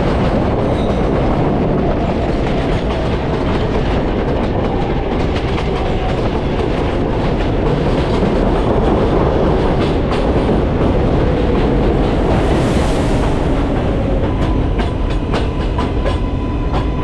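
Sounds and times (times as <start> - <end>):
subway train rumbling and rattling: 0.0 - 17.0.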